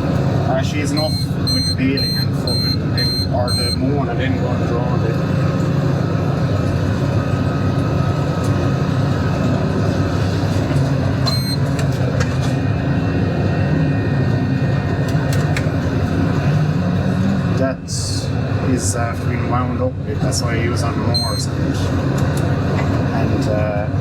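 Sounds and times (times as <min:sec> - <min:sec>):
short electronic beep: 0:01.0 - 0:03.9, 0:11.3 - 0:11.6, 0:21.2 - 0:21.5.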